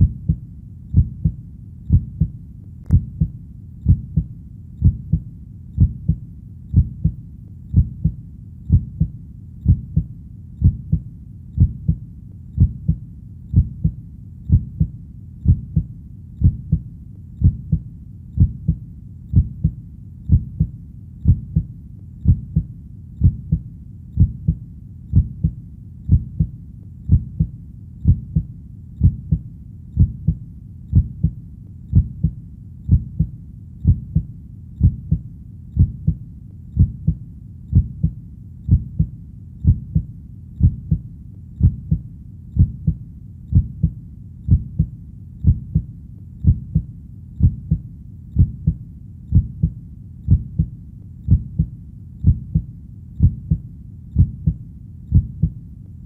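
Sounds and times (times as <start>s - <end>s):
heartbeat double thump: 0.0s - 2.3s, 2.9s - 5.2s, 5.8s - 11.0s, 11.6s - 12.0s, 12.6s - 16.8s, 17.4s - 17.8s, 18.4s - 23.6s, 24.2s - 26.5s, 27.1s - 29.4s, 30.0s - 35.2s, 35.8s - 36.2s, 36.8s - 41.0s, 41.6s - 42.0s, 42.6s - 47.8s, 48.4s - 50.7s, 51.3s - 53.6s, 54.2s - 55.6s.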